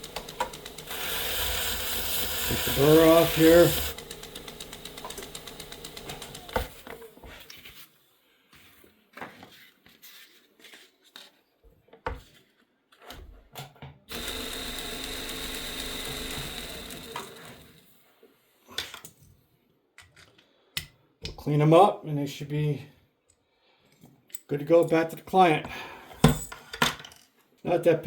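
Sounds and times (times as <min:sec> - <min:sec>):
sharpening machine motor whine: 0:00.0 - 0:06.9, 0:14.1 - 0:17.8
clicks and knocks of handling: 0:20.0 - 0:21.4.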